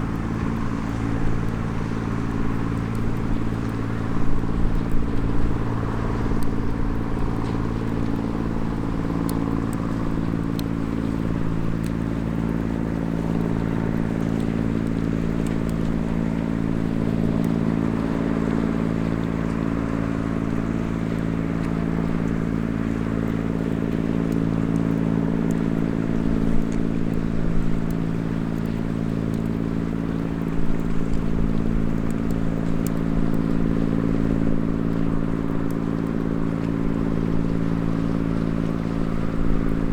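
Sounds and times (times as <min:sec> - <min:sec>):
wood fire crackling: 0:00.0 - 0:19.2
low engine hum: 0:00.0 - 0:39.9.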